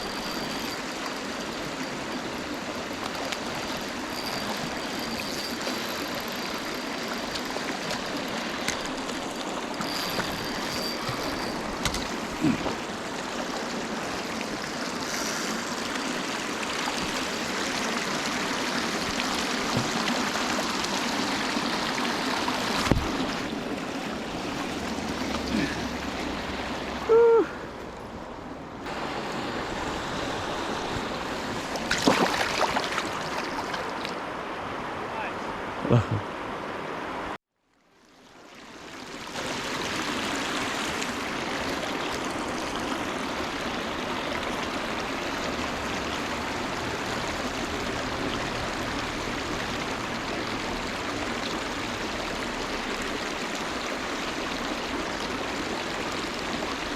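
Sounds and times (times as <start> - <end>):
river water running over rocks: 0.0 - 37.3, 37.9 - 56.9
loud pitched squeak: 9.8 - 11.9.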